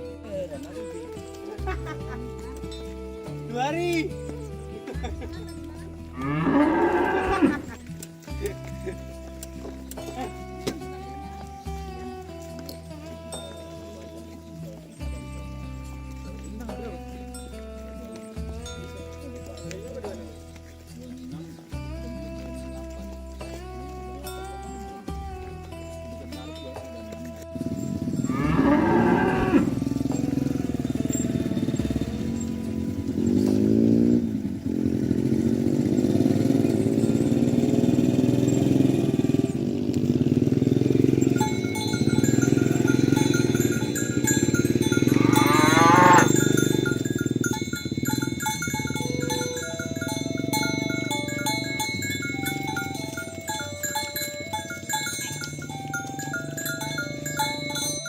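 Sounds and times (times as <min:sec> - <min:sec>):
music with plucked notes: 0:00.0 - 0:58.0
cattle mooing: 0:06.2 - 0:07.8, 0:28.2 - 0:47.6, 0:48.2 - 0:58.0.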